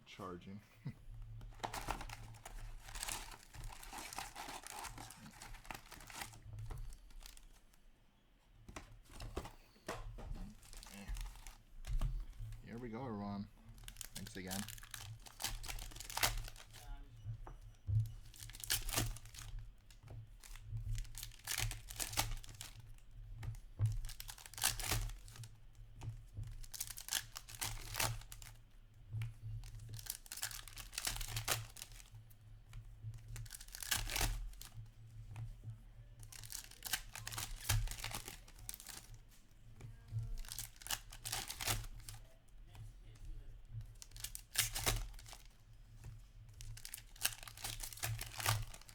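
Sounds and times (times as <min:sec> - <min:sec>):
foil wrappers tearing and crinkling: 0:01.2 - 0:07.7, 0:10.4 - 0:13.0, 0:13.6 - 0:17.1, 0:18.0 - 0:25.6, 0:26.5 - 0:28.6, 0:29.5 - 0:32.2, 0:33.2 - 0:34.9, 0:36.2 - 0:39.2, 0:40.1 - 0:42.3, 0:43.1 - 0:45.5, 0:46.6 - 0:48.9.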